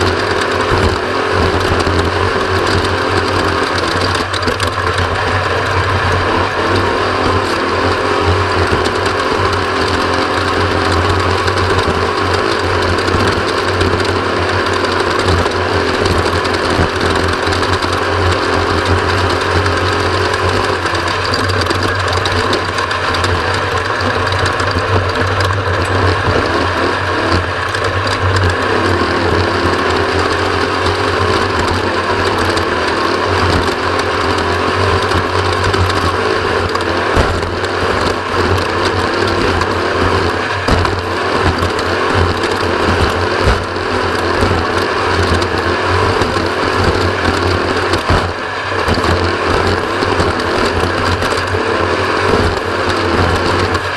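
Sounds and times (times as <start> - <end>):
rattling and knocking: 0.0 - 53.9
vehicle engine running: 0.0 - 53.9.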